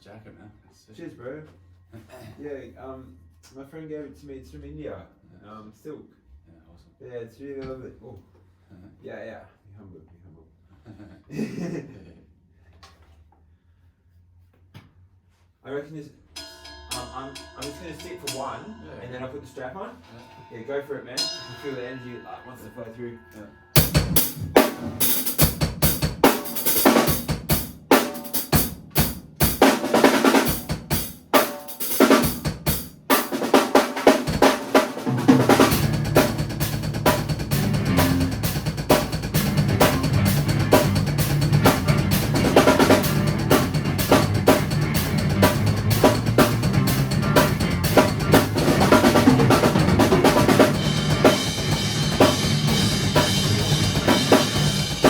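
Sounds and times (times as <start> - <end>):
drum kit playing: 16.4 - 20.5, 21.2 - 22.0, 23.8 - 55.0.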